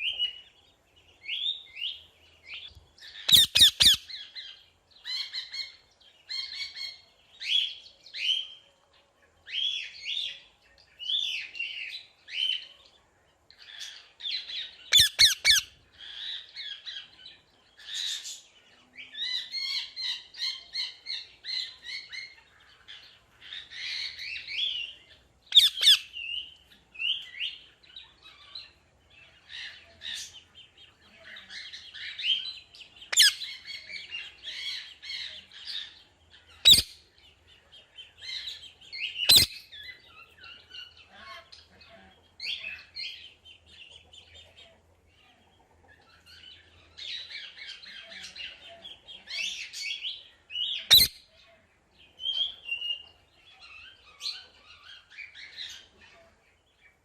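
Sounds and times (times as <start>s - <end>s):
parrot chirping and squawking: 3.1s - 4.3s, 14.9s - 16.2s, 25.5s - 26.2s, 33.1s - 33.7s, 36.5s - 37.0s, 39.2s - 42.8s, 50.8s - 51.3s.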